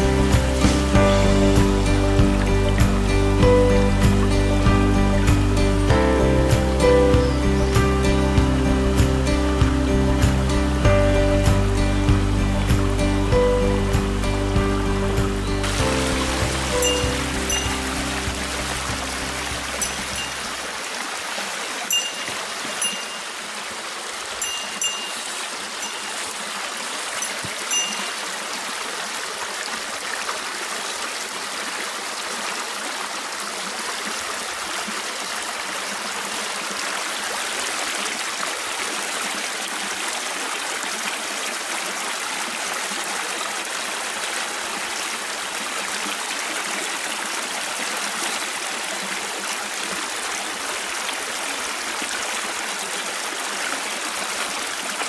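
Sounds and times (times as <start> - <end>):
stream running over rocks: 0.0 - 55.0
brief high chime: 16.7 - 18.1.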